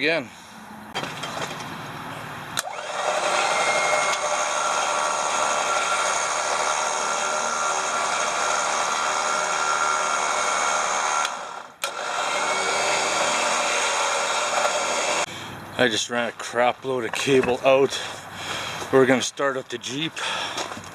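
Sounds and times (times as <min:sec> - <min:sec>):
electric winch motor running: 0:02.6 - 0:15.3.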